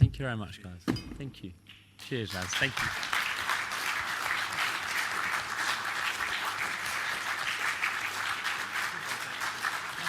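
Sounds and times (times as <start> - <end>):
crowd applauding: 2.0 - 10.0.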